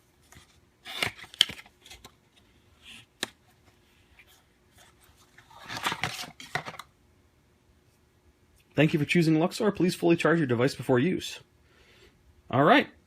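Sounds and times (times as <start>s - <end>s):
cardboard packaging rustling: 0.2s - 6.9s.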